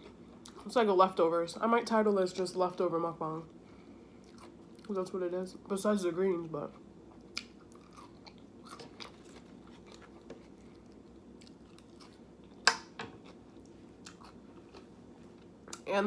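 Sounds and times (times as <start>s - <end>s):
person chewing food: 4.2s - 4.9s, 7.1s - 15.8s.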